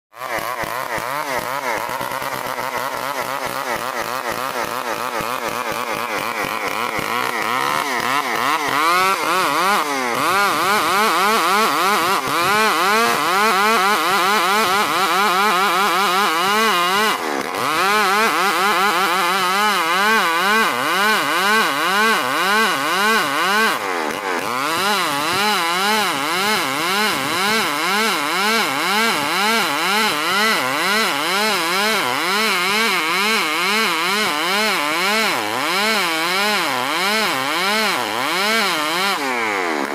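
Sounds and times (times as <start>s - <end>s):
chainsaw cutting log: 0.1s - 39.9s.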